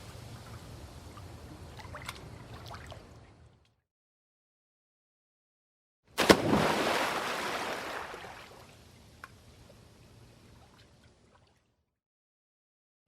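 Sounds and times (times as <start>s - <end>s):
body diving into water: 6.2s - 8.7s.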